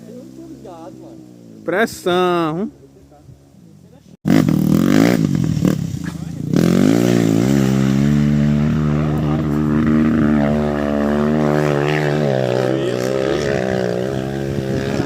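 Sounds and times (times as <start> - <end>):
motorcycle engine at high revs: 4.2 - 15.0.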